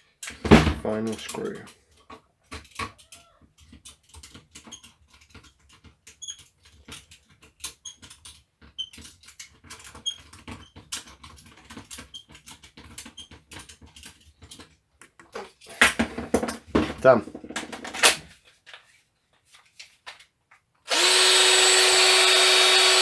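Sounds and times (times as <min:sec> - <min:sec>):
screwdriver clicking and scratching: 0:20.9 - 0:23.0.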